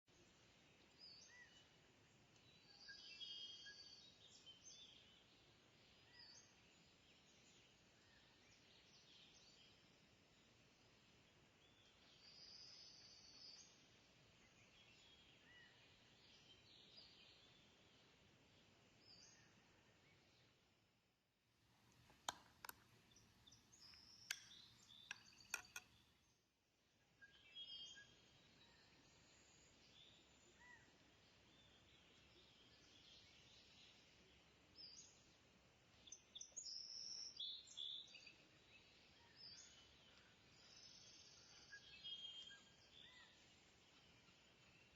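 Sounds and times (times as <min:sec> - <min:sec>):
faint birdsong: 0:00.0 - 0:44.9
low background hiss: 0:21.6 - 0:44.9
sharp clicks: 0:21.9 - 0:23.0, 0:23.8 - 0:26.0.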